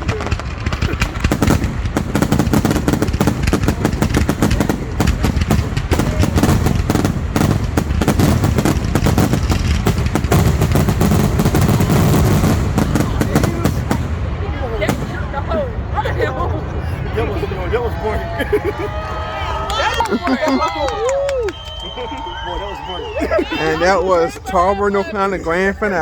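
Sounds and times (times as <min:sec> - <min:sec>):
fireworks rapid bangs: 0:00.0 - 0:15.8.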